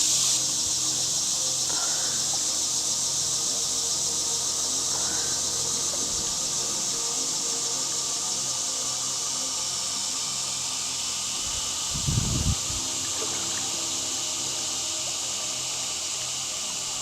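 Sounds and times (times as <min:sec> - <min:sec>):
insects buzzing: 0:00.0 - 0:17.0.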